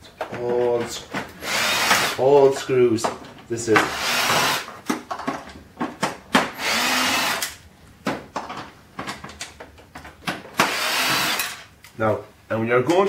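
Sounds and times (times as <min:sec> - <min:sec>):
power drill running: 0:01.4 - 0:02.2, 0:03.9 - 0:04.7, 0:06.6 - 0:07.5, 0:10.6 - 0:11.6
plastic parts clicking and knocking: 0:04.7 - 0:06.6, 0:07.4 - 0:11.6.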